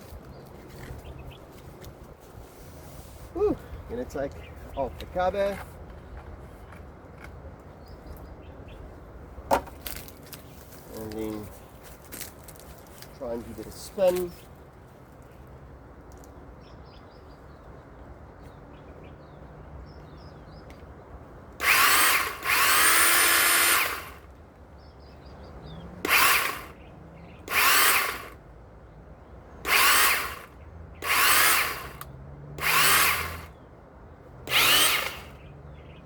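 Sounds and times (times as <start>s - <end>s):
electric pole saw whine: 21.6s - 24.3s, 26.0s - 26.8s, 27.4s - 28.4s, 29.6s - 33.6s, 34.4s - 35.4s.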